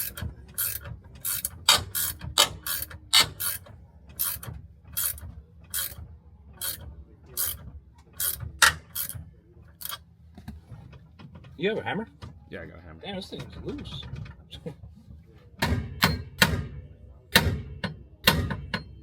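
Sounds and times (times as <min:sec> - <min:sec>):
ratchet wrench clicking: 0:00.0 - 0:06.0, 0:06.6 - 0:07.6, 0:08.2 - 0:09.2, 0:09.8 - 0:10.0.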